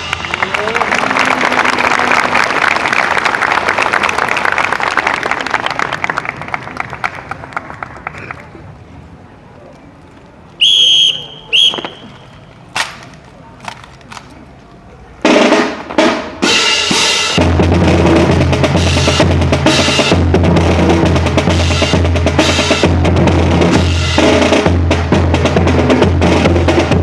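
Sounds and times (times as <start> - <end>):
whistle blasts: 10.6 - 12.5
drum corps playing: 15.2 - 27.0.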